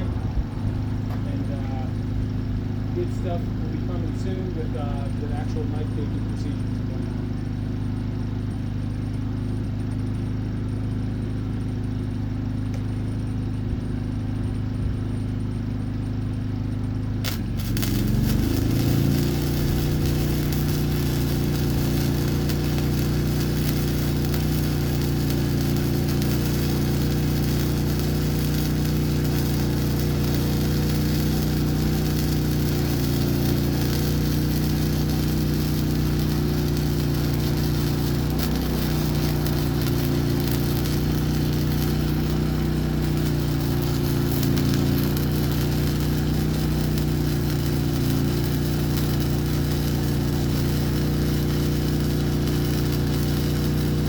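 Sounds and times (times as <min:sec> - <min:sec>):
welding arc crackling: 0:00.0 - 0:13.3, 0:17.1 - 0:54.0
generator engine running: 0:00.0 - 0:54.0.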